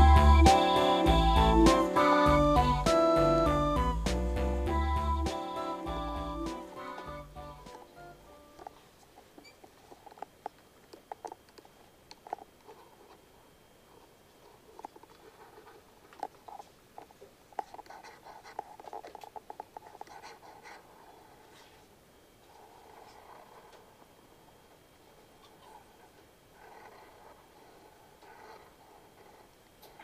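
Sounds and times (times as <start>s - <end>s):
colouring tool scratching paper: 17.6s - 21.8s.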